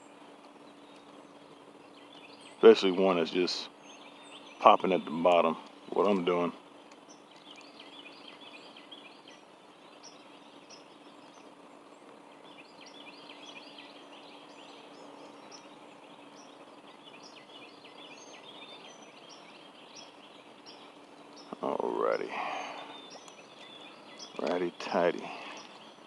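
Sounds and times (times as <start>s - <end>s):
light hiss: 0.0s - 26.0s
low hum: 0.0s - 26.0s
small birds chirping and trilling: 0.0s - 26.0s.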